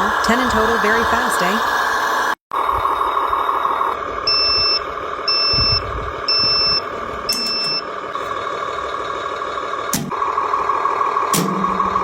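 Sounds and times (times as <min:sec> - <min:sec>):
electronic engine hum: 0:00.0 - 0:12.0
toy truck reversing beeps: 0:02.6 - 0:11.3.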